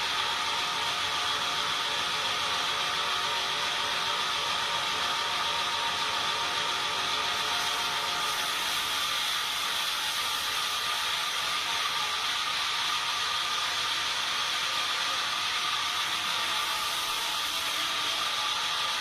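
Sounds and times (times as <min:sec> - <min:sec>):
sawmill machinery hissing: 0:05.2 - 0:19.0.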